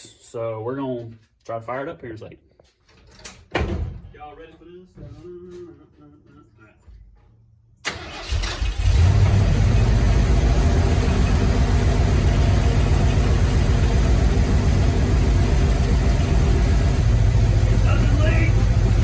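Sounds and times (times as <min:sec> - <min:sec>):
engine cranking and running: 0:07.9 - 0:19.0.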